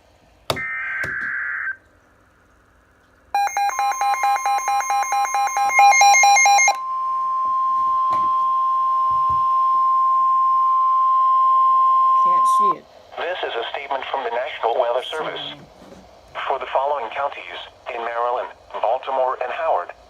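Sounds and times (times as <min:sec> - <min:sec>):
rapid electronic beeping: 0:03.4 - 0:06.8
steady warning tone: 0:03.4 - 0:12.8.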